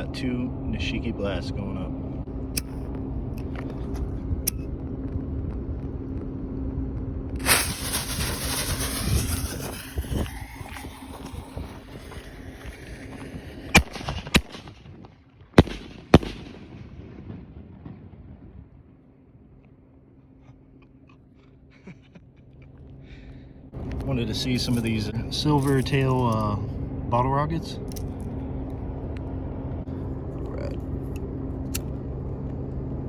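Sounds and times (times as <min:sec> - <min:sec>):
hissing crackle: 0:07.4 - 0:15.0
firework burst: 0:07.4 - 0:18.6
sharp firework bangs: 0:07.4 - 0:18.6.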